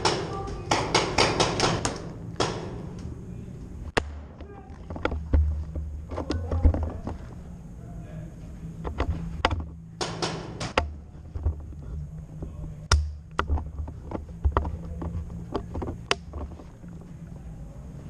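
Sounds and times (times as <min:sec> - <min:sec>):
sharp clicks and knocks: 0:08.8 - 0:11.8, 0:12.9 - 0:16.7.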